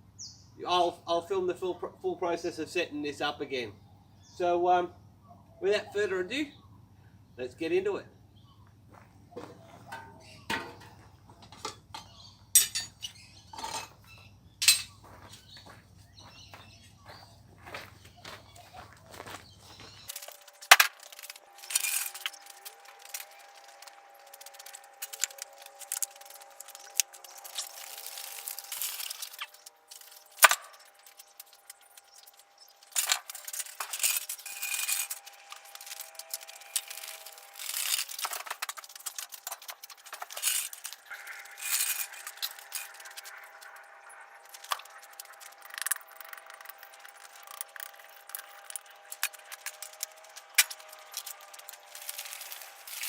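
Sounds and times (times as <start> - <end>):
metal tools clinking and rattling: 9.8 - 15.1, 20.0 - 43.5, 44.5 - 53.0.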